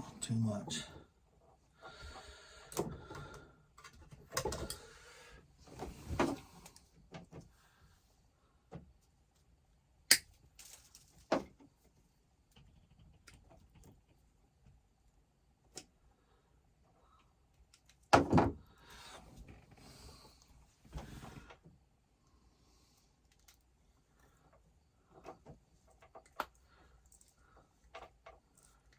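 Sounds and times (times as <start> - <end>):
rustling and scraping: 5.6 - 6.8.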